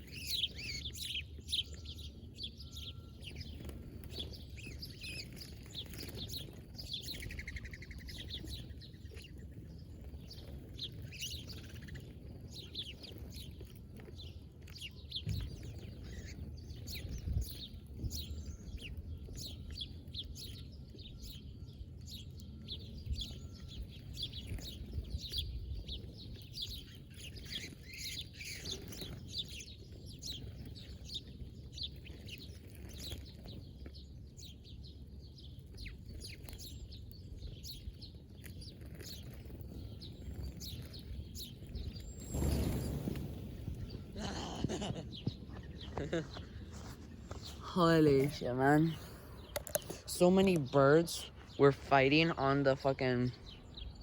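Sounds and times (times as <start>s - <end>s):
small birds chirping: 0.0s - 54.0s
buzzy falling bird trill: 41.3s - 52.4s.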